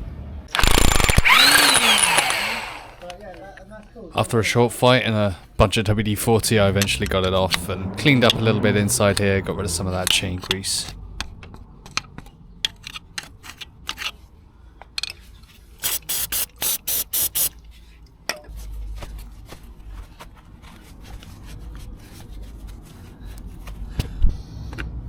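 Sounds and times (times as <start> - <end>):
clicks and scraping of tools: 11.8 - 14.2
aerosol spray can hissing: 15.8 - 17.5.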